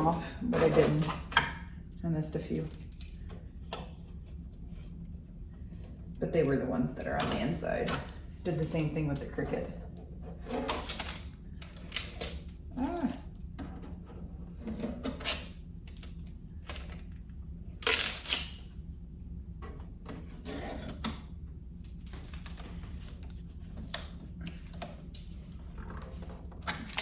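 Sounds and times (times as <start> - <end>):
steady low hum: 0.0 - 27.0
tape peeling off plastic: 17.8 - 18.7.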